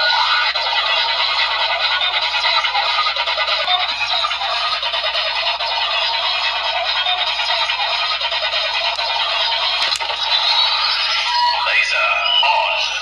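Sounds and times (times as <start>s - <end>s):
toy sound effects and music: 8.2s - 10.7s.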